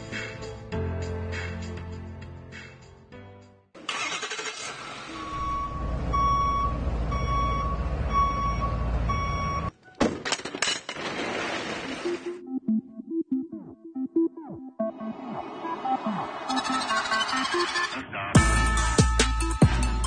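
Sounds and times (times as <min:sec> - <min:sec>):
truck engine running: 0:03.9 - 0:09.7
reversing beeper: 0:05.1 - 0:09.7.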